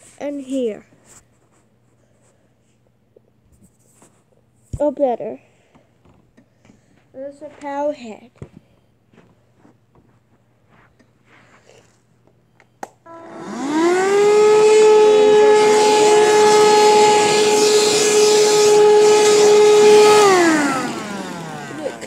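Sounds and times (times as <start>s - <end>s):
vacuum cleaner motor whining: 13.1s - 22.0s.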